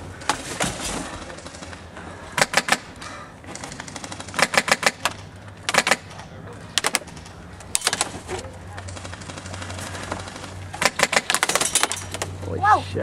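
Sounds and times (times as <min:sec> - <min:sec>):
airsoft guns firing bursts: 0:02.4 - 0:03.0, 0:03.6 - 0:06.2, 0:08.9 - 0:12.2.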